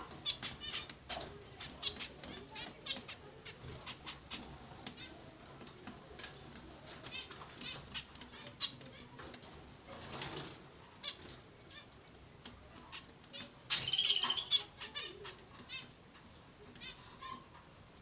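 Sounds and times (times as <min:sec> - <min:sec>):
finches chirping: 0:00.0 - 0:05.2, 0:10.9 - 0:17.5.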